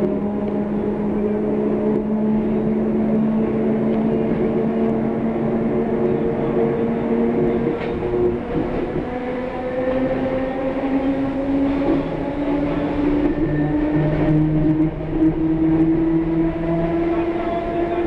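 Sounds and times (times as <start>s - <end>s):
electric train droning: 0.0s - 18.0s.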